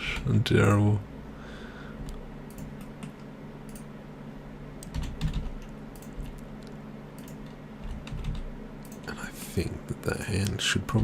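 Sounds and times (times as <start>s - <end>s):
steady low hum: 0.0s - 11.0s
keyboard keys tapping: 4.8s - 6.4s, 7.2s - 9.1s.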